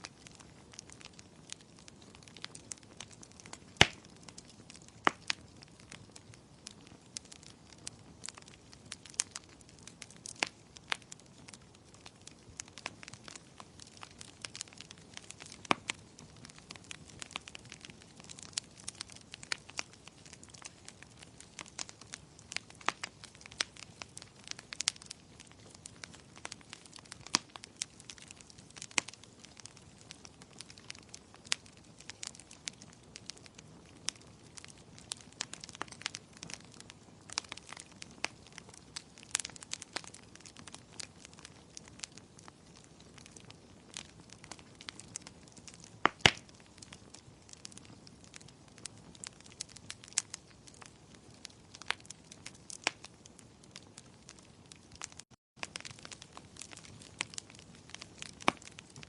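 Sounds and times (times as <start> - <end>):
wood fire crackling: 0.0 - 59.0.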